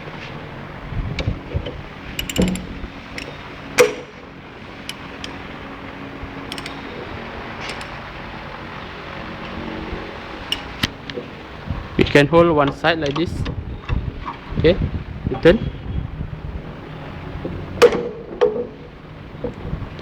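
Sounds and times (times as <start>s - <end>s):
metal tool clicks and knocks: 2.2s - 4.2s, 4.9s - 5.6s, 6.4s - 8.1s, 10.5s - 11.0s.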